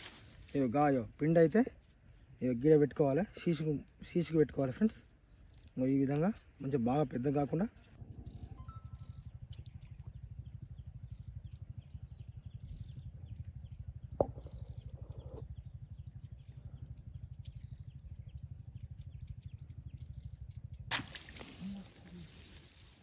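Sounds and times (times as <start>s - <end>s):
low fast even throb: 6.1s - 20.9s
faint high chirps: 8.3s - 10.1s.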